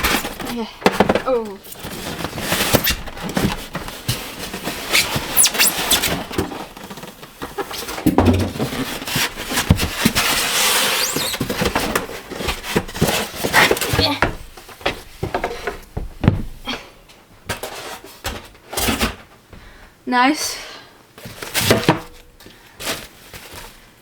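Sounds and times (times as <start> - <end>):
cardboard rustling and scraping: 0.0 - 15.8, 21.2 - 23.9
short squeaks: 4.9 - 6.1, 10.9 - 11.4.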